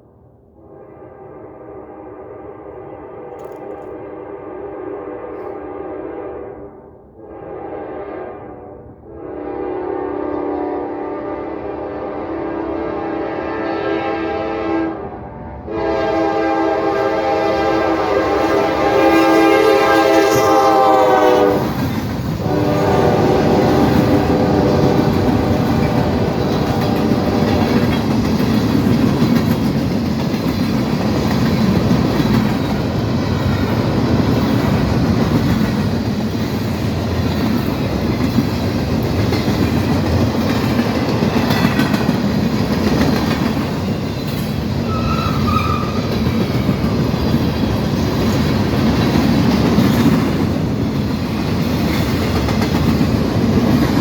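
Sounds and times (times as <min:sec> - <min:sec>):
locomotive horn blast: 0:00.6 - 0:27.9, 0:44.8 - 0:46.2
train wheels clattering on rails: 0:18.1 - 0:54.0.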